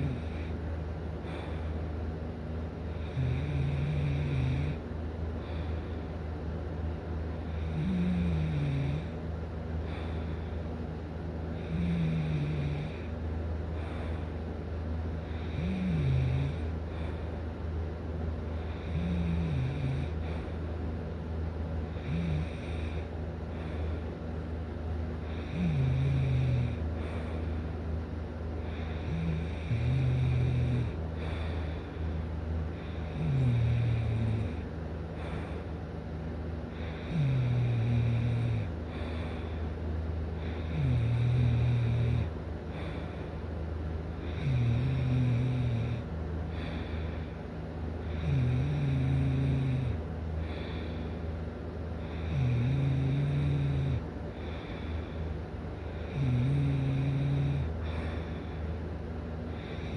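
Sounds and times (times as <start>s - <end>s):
steady low hum: 0.0s - 59.9s
person snoring: 2.9s - 4.8s, 7.5s - 9.2s, 11.6s - 13.2s, 15.3s - 17.2s, 18.6s - 20.6s, 21.9s - 24.0s, 25.2s - 27.5s, 28.7s - 32.0s, 32.8s - 35.6s, 36.7s - 39.6s, 40.4s - 43.3s, 44.2s - 47.3s, 48.0s - 51.0s, 52.0s - 55.2s, 55.8s - 58.6s.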